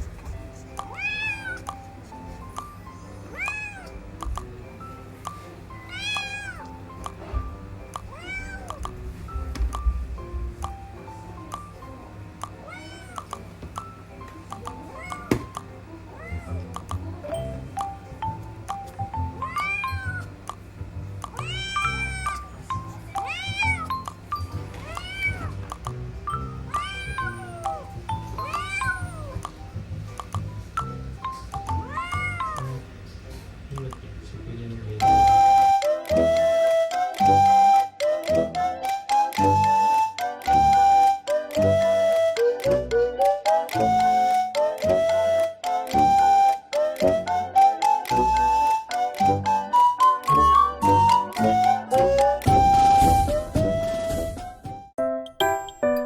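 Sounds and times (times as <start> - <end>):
background music with chiming notes: 0.0 - 12.5, 17.2 - 32.9, 35.0 - 56.0
kitten meowing: 0.9 - 1.8, 3.0 - 4.0, 5.8 - 6.7, 8.0 - 8.9, 12.6 - 13.4, 14.8 - 15.4, 16.1 - 16.7, 19.4 - 20.3, 21.3 - 24.0, 24.8 - 25.6, 26.4 - 29.5, 31.7 - 32.8.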